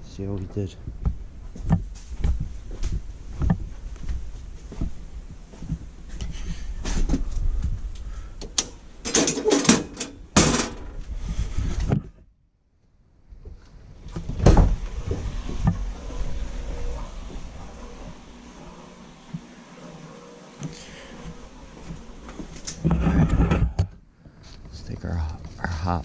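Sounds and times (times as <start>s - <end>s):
doors knocking and clattering: 8.5s - 11.0s, 14.1s - 18.2s.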